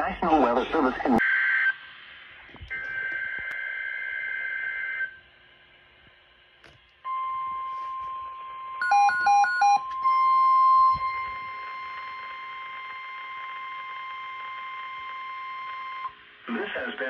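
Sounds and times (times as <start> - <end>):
quick beeps: 7.1 - 12.2
high-pitched alarm tone: 7.1 - 16.1.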